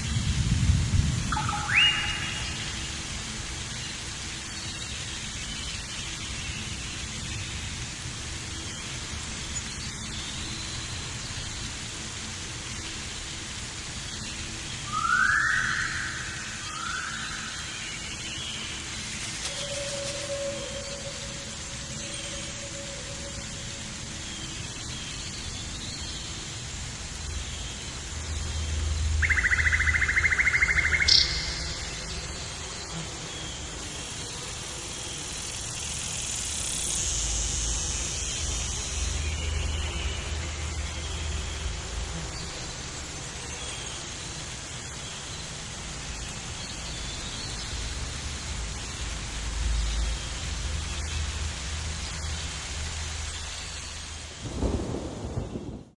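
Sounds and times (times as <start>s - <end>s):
background hiss: 0.0s - 55.9s
faint high chirps: 29.2s - 32.4s.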